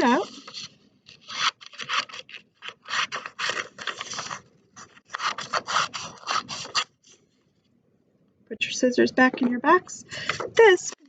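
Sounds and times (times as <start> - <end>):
scissors cutting paper: 0.0 - 6.9.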